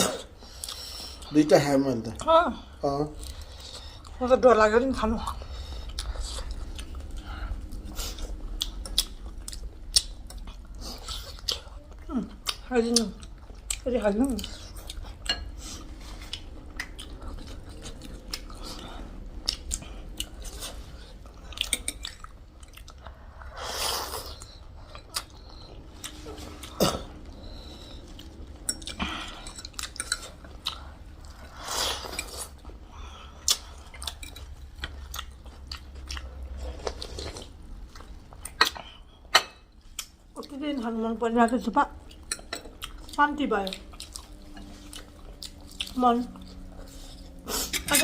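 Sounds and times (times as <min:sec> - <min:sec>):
close chewing and biting: 0:05.2 - 0:39.0, 0:42.0 - 0:48.0.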